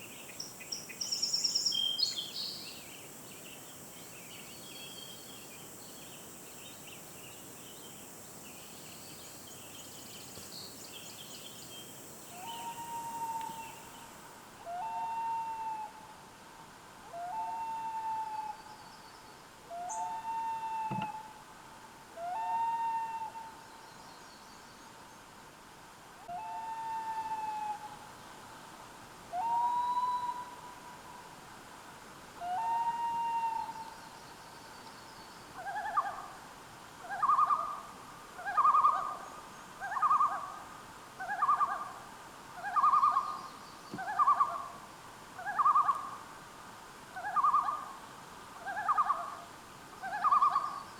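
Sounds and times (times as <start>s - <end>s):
songbird chirps: 0.0s - 14.2s
loon calling: 12.4s - 13.8s, 44.0s - 44.7s, 50.0s - 50.8s.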